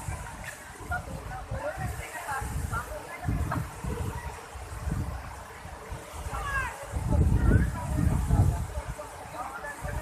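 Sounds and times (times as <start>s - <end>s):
waterfall rushing: 0.0s - 10.0s
wind buffeting microphone: 0.0s - 10.0s.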